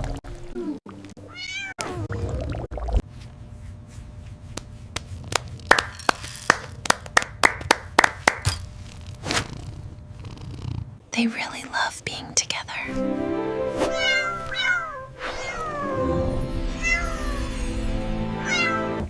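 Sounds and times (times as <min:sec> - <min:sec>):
cats slapping slime: 0:04.2 - 0:05.9.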